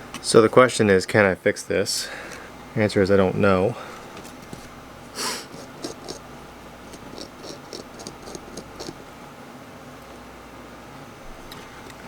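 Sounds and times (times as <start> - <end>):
short hiss: 5.2 - 5.6.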